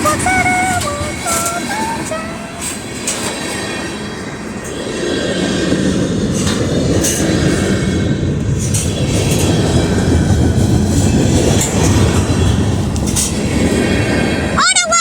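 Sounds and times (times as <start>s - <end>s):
train clanking: 0.0s - 15.0s
train wheels rumbling on rails: 0.0s - 15.0s.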